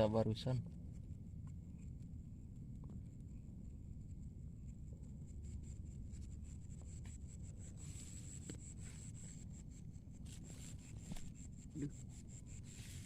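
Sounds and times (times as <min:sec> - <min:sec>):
faint scratchy rubbing: 0:12.6 - 0:13.0.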